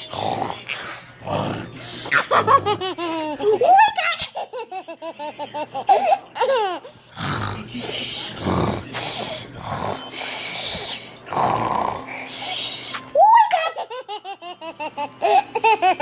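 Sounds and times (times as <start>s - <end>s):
harsh rasping snores: 7.2s - 7.7s, 8.4s - 12.2s.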